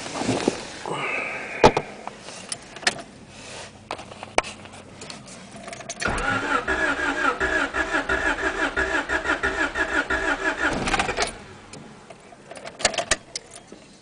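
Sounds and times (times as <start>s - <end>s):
engine cranked by starter: 5.9s - 11.9s.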